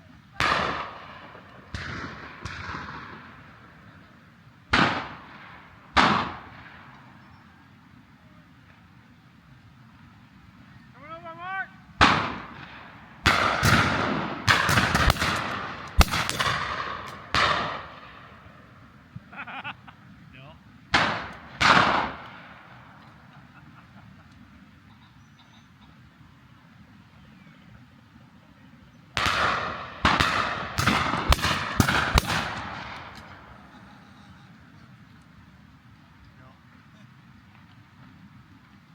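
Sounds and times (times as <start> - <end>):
shotgun shots ringing: 0.4 - 3.6, 4.7 - 7.0, 12.0 - 18.5, 20.9 - 23.0, 29.2 - 33.7.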